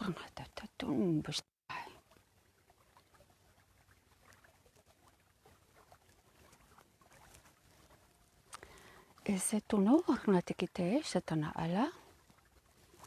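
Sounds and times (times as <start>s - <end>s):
faint small clicks and rustles: 1.7s - 10.2s, 11.8s - 13.0s.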